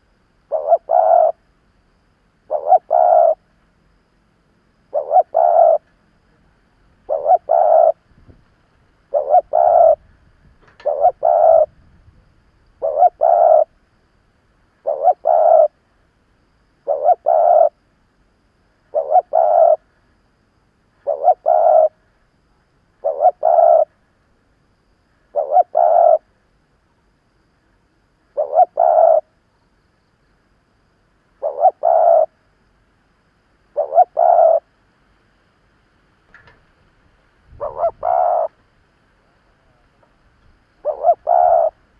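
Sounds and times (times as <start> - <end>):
dove cooing: 0.0 - 1.4, 2.5 - 3.4, 4.9 - 5.8, 7.0 - 8.0, 9.1 - 10.1, 10.7 - 11.8, 12.8 - 13.8, 14.8 - 15.8, 16.8 - 17.8, 18.9 - 19.8, 21.0 - 22.0, 23.0 - 23.9, 25.3 - 26.3, 28.3 - 29.3, 31.4 - 32.4, 33.7 - 34.7, 37.5 - 38.6, 40.8 - 41.9.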